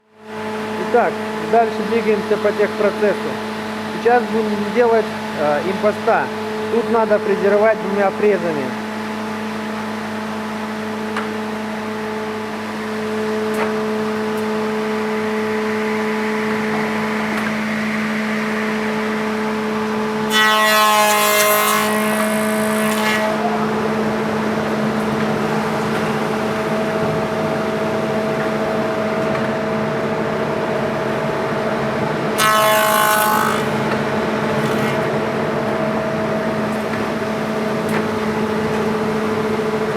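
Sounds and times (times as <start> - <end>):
milling machine humming: 0.3 - 39.9
timber fed through cutters: 20.2 - 24.0, 32.4 - 35.4.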